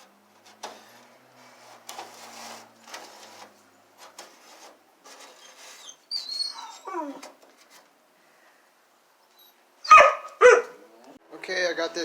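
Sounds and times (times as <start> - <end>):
scraping on sheet metal: 0.0 - 6.4
dog whining: 5.8 - 7.3.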